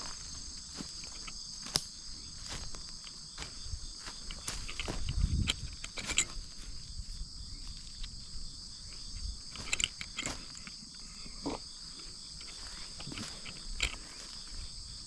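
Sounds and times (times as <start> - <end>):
insects chirring: 0.0 - 15.0
clicks and rustles: 2.8 - 6.7, 8.9 - 11.1, 12.3 - 14.7.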